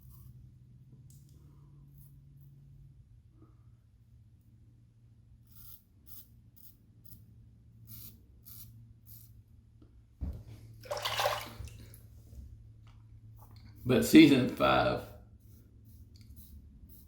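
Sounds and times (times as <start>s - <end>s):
razor scraping stubble: 5.5s - 7.3s
running tap water: 10.8s - 12.0s.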